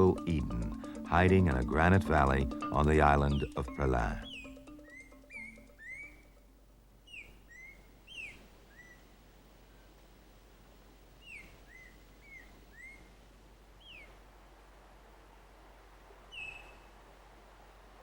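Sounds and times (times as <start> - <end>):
faint whistled bird calls: 4.2 - 6.4, 7.0 - 9.9, 11.2 - 13.2, 13.8 - 14.2, 16.2 - 17.1.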